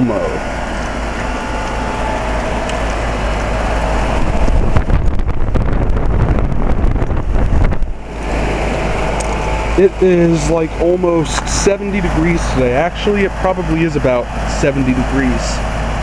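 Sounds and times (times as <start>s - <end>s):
heat pump humming: 0.0s - 16.0s
wind buffeting microphone: 2.2s - 9.8s.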